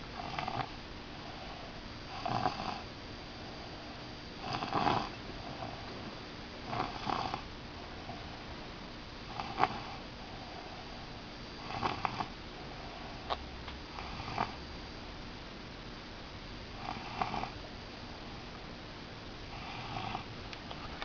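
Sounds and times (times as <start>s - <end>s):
person snoring: 0.2s - 0.7s, 2.1s - 2.8s, 4.4s - 5.9s, 6.6s - 8.3s, 9.3s - 10.8s, 11.6s - 12.3s, 13.9s - 14.6s, 16.8s - 17.6s, 19.5s - 20.3s.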